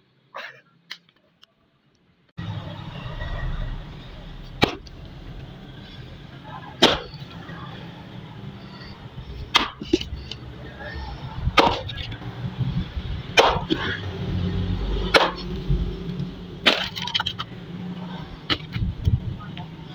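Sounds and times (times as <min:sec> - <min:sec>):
axe chopping wood: 0:06.8 - 0:07.1, 0:09.5 - 0:09.9, 0:13.4 - 0:13.8, 0:15.1 - 0:15.4.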